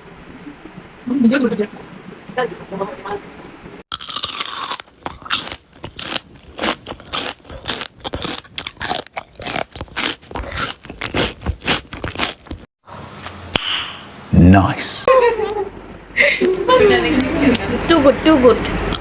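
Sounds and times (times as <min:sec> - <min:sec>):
crunchy chewing: 0:03.9 - 0:12.7.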